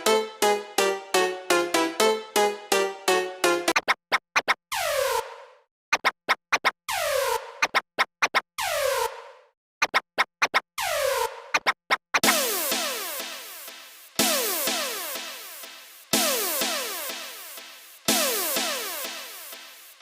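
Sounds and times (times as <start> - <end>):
electronic dance beat: 0.0 - 3.8, 12.2 - 20.0
stuttering electronic hits: 12.2 - 20.0.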